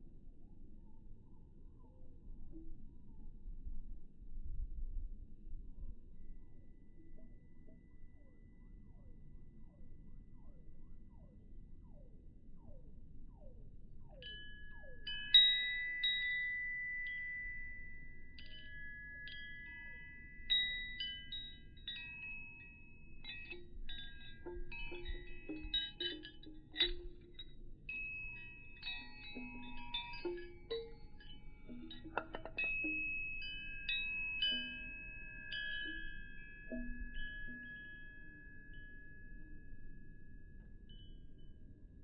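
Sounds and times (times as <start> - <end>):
wind chimes ringing: 14.2 - 42.0.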